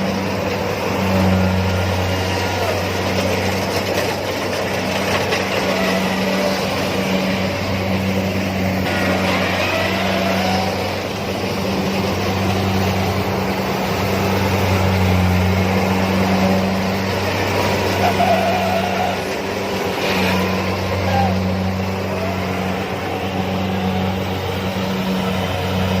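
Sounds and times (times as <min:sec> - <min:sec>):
combine harvester running: 0:00.0 - 0:26.0.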